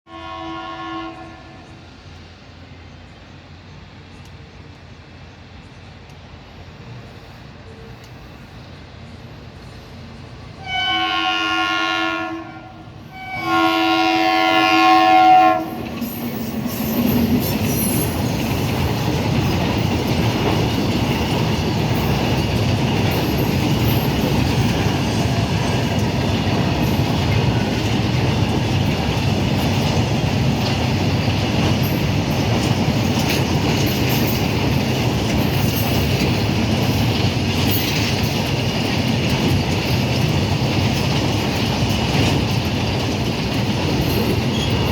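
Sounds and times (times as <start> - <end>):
locomotive horn blasts: 0.1 - 1.8, 10.6 - 15.9
train passing with heavy rumble: 0.1 - 44.9.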